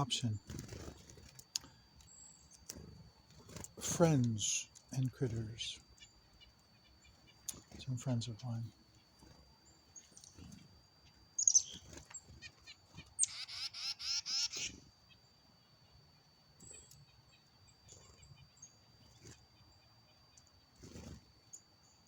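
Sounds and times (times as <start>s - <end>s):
wren singing: 3.5s - 14.8s.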